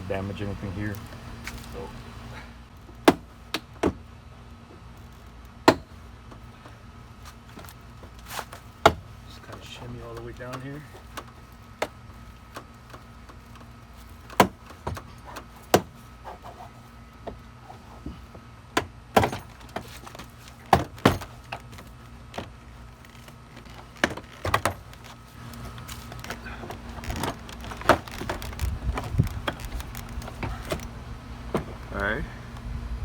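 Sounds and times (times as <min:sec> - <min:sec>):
panel rustling and knocking: 0:07.5 - 0:16.0, 0:18.8 - 0:22.6, 0:23.6 - 0:30.9.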